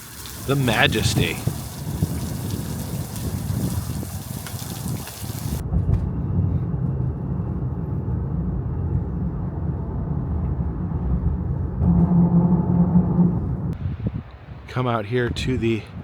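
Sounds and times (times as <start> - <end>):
vehicle driving rumble: 0.0 - 13.8
humming tone: 5.7 - 13.8.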